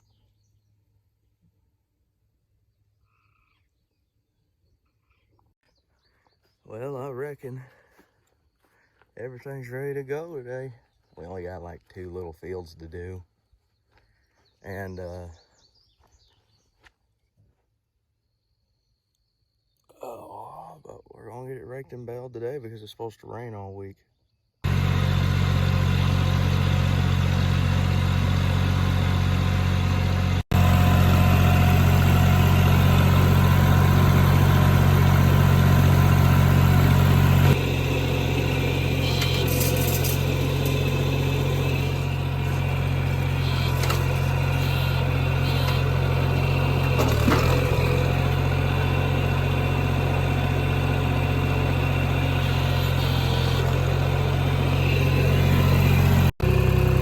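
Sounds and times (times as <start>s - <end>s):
tractor engine droning: 24.6s - 57.0s.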